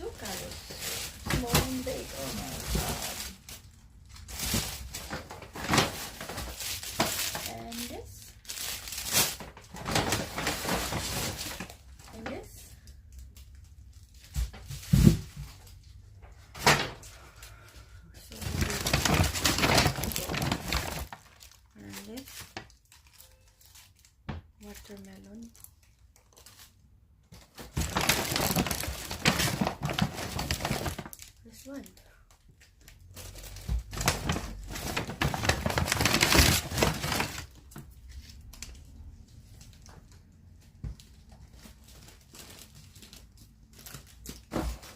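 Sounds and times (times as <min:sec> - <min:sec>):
groceries thumping and knocking: 0:00.0 - 0:03.5, 0:04.2 - 0:07.8, 0:08.9 - 0:12.3, 0:14.3 - 0:15.6, 0:18.4 - 0:21.2, 0:27.3 - 0:31.1, 0:33.5 - 0:37.9, 0:44.1 - 0:44.9
plastic packaging crinkling: 0:00.0 - 0:16.2, 0:18.3 - 0:44.9.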